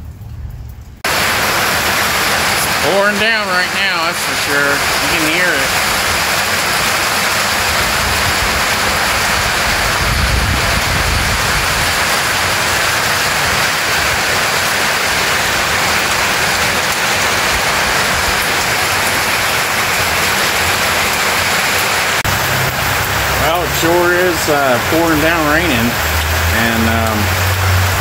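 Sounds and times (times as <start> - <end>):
low rumble: 0.0 - 1.4
heavy rain pouring: 0.0 - 28.0.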